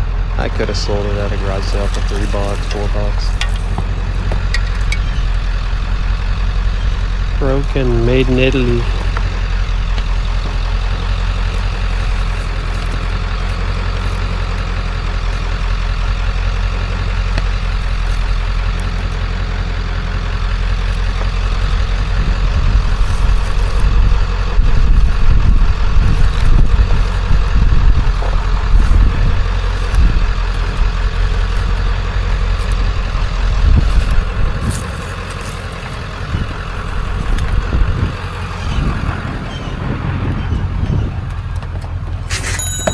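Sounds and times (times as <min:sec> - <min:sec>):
vehicle engine rumbling: 0:00.0 - 0:42.9.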